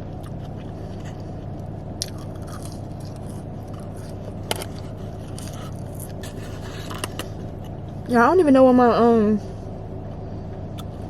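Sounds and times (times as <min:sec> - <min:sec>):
close-up chewing and biting: 0:00.0 - 0:07.9
low hum inside car: 0:00.0 - 0:11.0.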